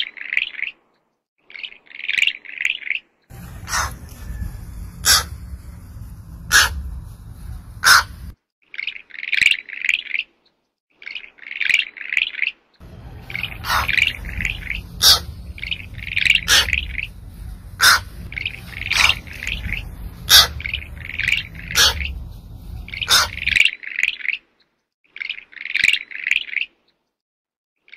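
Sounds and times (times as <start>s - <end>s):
low background hum: 3.3s - 8.3s, 12.8s - 23.6s
birds chirping: 3.3s - 8.4s, 12.8s - 23.6s.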